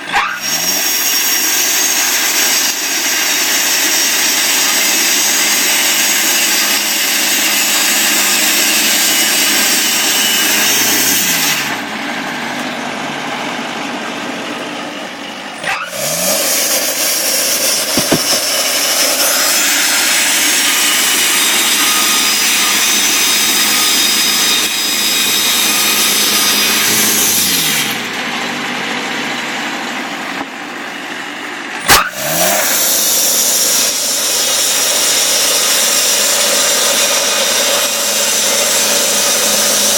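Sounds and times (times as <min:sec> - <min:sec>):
sawmill cutting through log: 0:00.0 - 0:39.9
sharp knock: 0:17.9 - 0:18.6.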